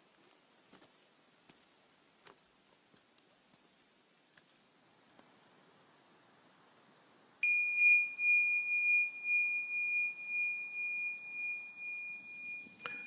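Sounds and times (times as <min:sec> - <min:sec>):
small metal bell ringing: 0:07.4 - 0:13.0.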